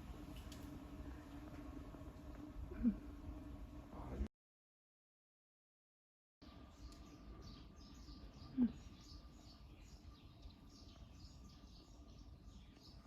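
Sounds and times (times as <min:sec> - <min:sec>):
small birds chirping: 0:06.4 - 0:13.0.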